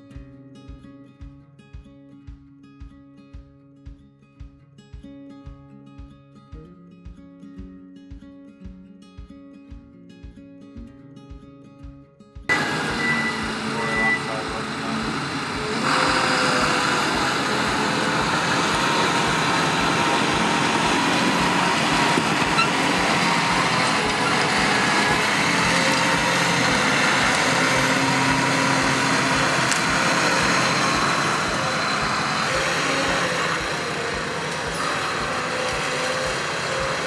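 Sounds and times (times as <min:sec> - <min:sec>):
engine running: 0:12.5 - 0:37.0.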